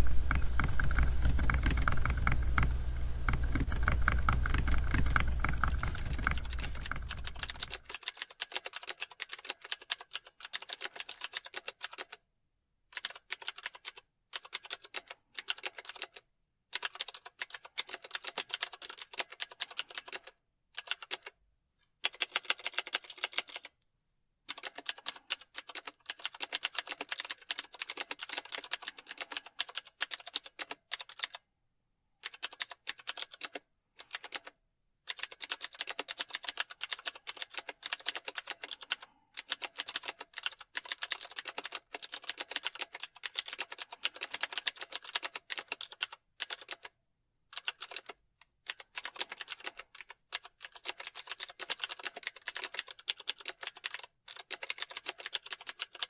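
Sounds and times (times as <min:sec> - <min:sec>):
keyboard typing clicks: 0:00.0 - 0:12.2, 0:24.5 - 0:31.4, 0:32.2 - 0:34.5, 0:35.1 - 0:46.9, 0:47.6 - 0:56.0.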